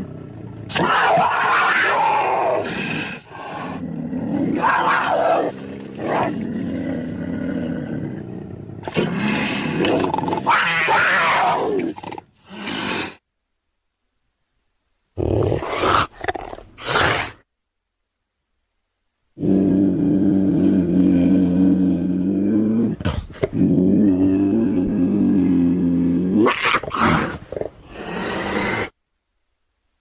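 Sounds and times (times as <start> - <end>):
cougar rough calls: 0.0 - 13.2, 15.2 - 17.4, 19.4 - 29.0.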